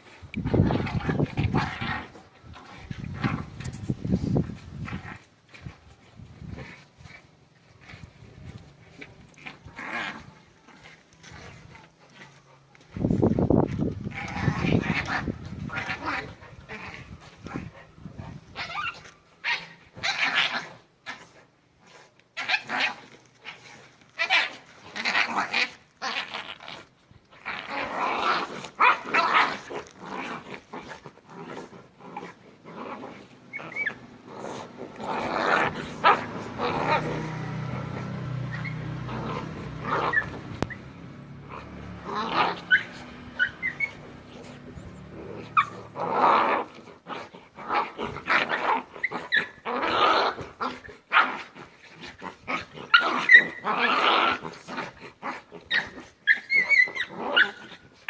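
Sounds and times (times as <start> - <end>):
dogs growling and snarling: 0.0 - 58.0
dog yelps and barks: 18.5 - 20.6, 35.9 - 40.9, 42.4 - 44.8, 45.4 - 46.0, 48.4 - 49.7, 52.8 - 54.0, 55.6 - 57.8.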